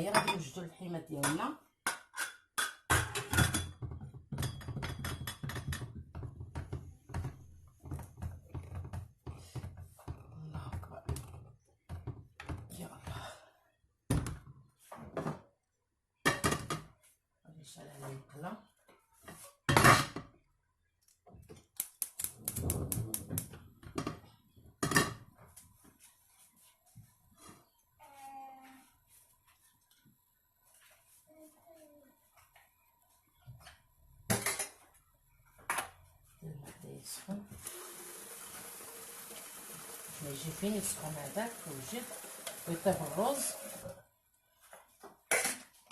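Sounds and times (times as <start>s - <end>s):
kitchen knocks and clatters: 0.0s - 0.6s, 1.2s - 13.2s, 14.1s - 15.6s, 16.2s - 17.0s, 19.2s - 20.4s, 21.3s - 25.6s, 33.4s - 35.0s, 35.6s - 36.0s, 44.7s - 45.9s.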